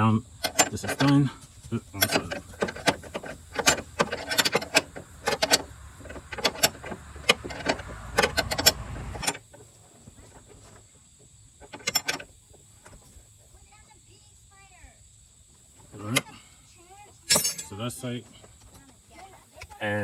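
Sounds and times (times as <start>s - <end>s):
hand tools clicking and clinking: 0.4s - 9.4s, 11.6s - 12.3s, 17.3s - 17.8s.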